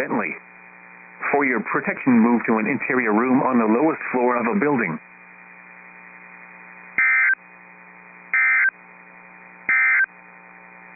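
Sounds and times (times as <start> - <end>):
digital data tone bursts: 7.0 - 7.4, 8.4 - 8.7, 9.7 - 10.1.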